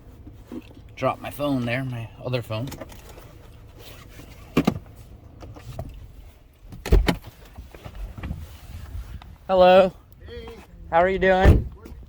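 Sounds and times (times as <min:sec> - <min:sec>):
vehicle door clunk: 0:04.4 - 0:06.0, 0:06.6 - 0:08.4, 0:11.4 - 0:12.0
heavy vehicle door thump: 0:06.7 - 0:07.3, 0:11.4 - 0:12.0.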